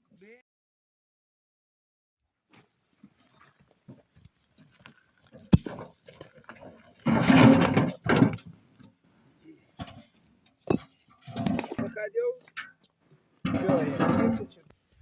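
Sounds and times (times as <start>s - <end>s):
loud rough clatter: 7.0s - 8.5s.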